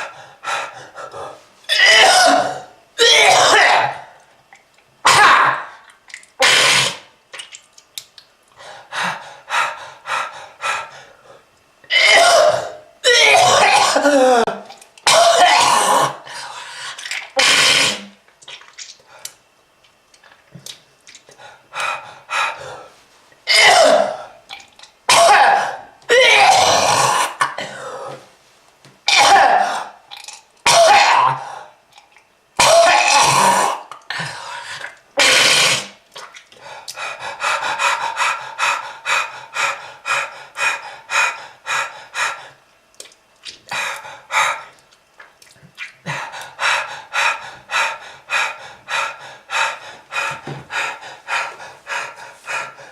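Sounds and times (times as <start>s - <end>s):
person coughing: 1.7s - 4.0s, 11.9s - 16.2s, 23.5s - 24.2s, 25.1s - 28.2s.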